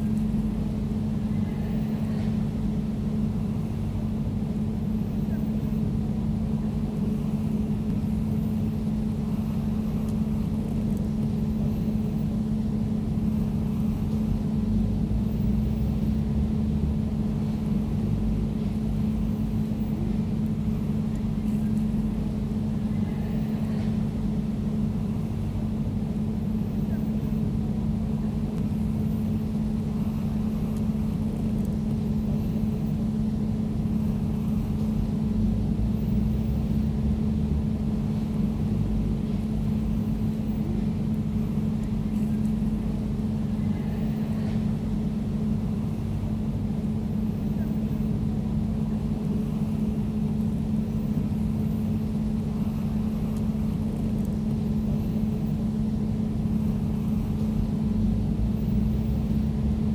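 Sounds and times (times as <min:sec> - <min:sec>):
air conditioner humming: 0:00.0 - 0:59.9.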